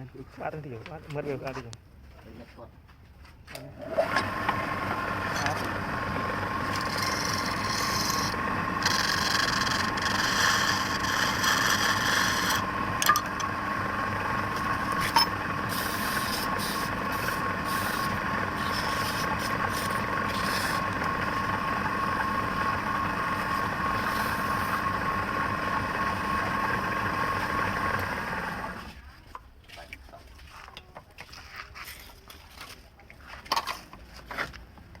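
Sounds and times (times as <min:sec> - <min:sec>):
tool scraping spinning wood: 0:03.8 - 0:29.0
wood lathe whining: 0:03.8 - 0:29.0.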